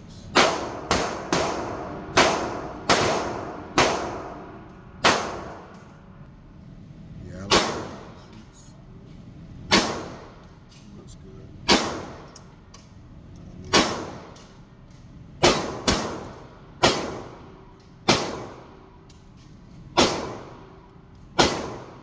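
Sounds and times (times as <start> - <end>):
rifle shots echoing: 0.3 - 5.9, 7.4 - 8.2, 9.7 - 10.4, 11.7 - 12.3, 13.7 - 14.4, 15.4 - 18.9, 20.0 - 20.8, 21.4 - 22.0.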